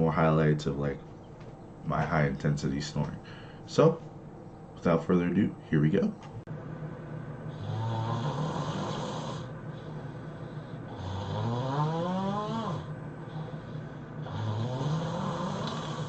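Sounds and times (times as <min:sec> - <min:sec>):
man snoring heavily: 0:07.5 - 0:16.0.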